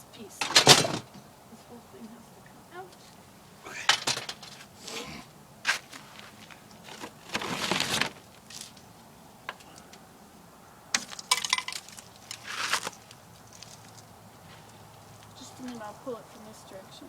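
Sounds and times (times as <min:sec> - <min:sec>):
scraping rustles: 0:00.3 - 0:10.1, 0:11.0 - 0:16.8
sharp clicks and clinks: 0:11.0 - 0:12.4.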